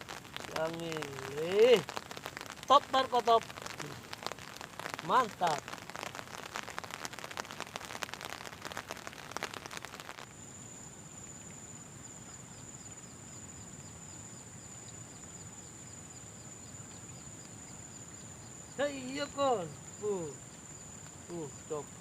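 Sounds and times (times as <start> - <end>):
dense crackling patter: 0.0 - 10.3
crickets chirring: 0.0 - 22.0.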